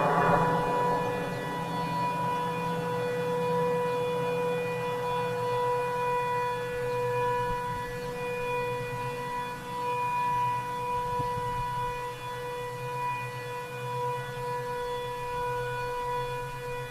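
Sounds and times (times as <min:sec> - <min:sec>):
tornado warning siren: 0:00.0 - 0:16.9.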